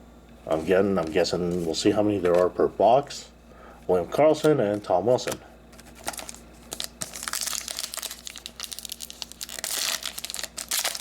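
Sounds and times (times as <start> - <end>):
foil wrapper crinkling and tearing: 5.8 - 11.0.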